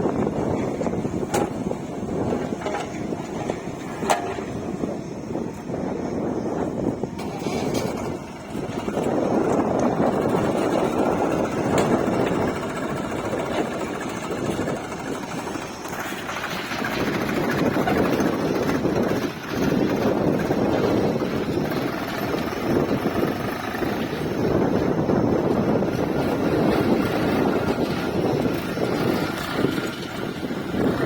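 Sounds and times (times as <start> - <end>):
diesel engine running: 0.0 - 31.0
wind noise on microphone: 0.0 - 31.0.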